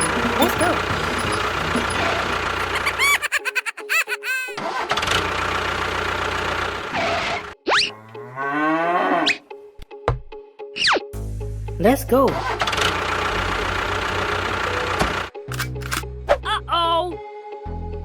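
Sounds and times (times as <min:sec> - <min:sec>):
model vehicle motor running: 0:00.0 - 0:03.2, 0:12.4 - 0:16.0
quick pitched chirps: 0:00.0 - 0:03.2.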